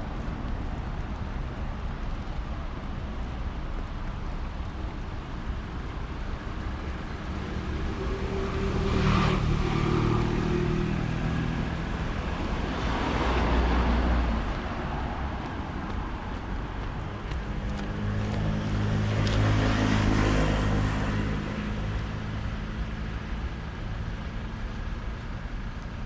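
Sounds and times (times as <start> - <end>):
low traffic rumble: 0.0 - 26.0
vehicle passing: 6.8 - 22.8.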